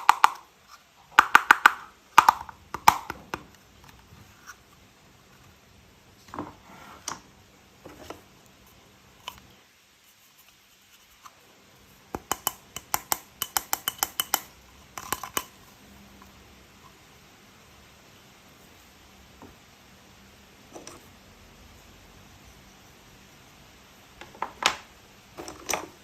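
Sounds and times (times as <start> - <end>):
plastic toy parts knocking: 0.0 - 3.6, 12.1 - 15.6, 24.2 - 26.0.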